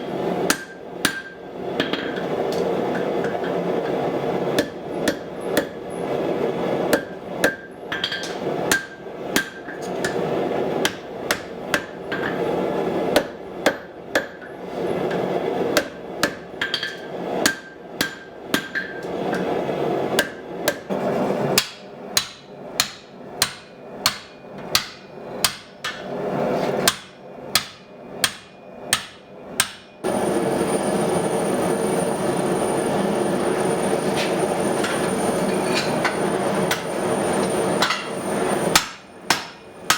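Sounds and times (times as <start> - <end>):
hammer striking steel on anvil: 0.5 - 2.2, 7.0 - 10.2, 13.2 - 14.5, 15.8 - 19.5, 21.6 - 26.1, 26.9 - 30.0, 34.0 - 39.9
steady rushing noise: 30.0 - 39.3.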